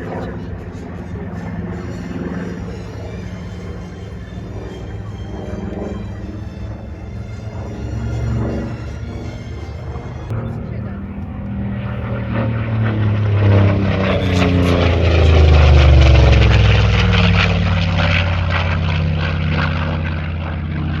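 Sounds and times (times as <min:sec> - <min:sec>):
propeller plane flying overhead: 0:00.0 - 0:21.0.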